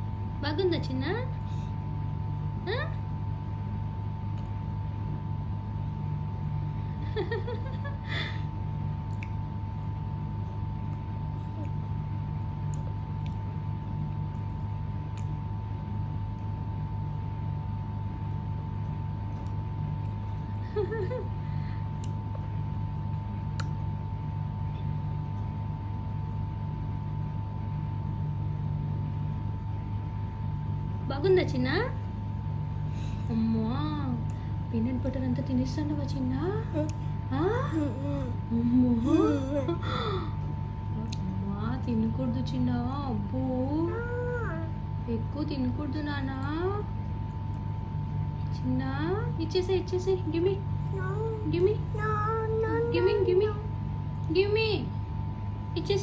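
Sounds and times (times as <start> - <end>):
low background hum: 0.0 - 56.0
baby babbling: 36.6 - 40.0, 43.9 - 44.7, 50.9 - 53.7.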